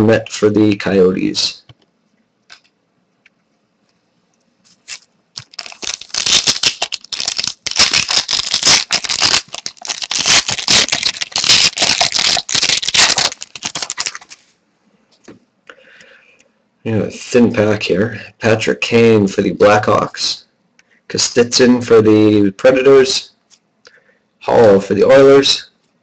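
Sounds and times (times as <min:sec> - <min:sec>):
wrapper tearing and crinkling: 0:04.7 - 0:14.5.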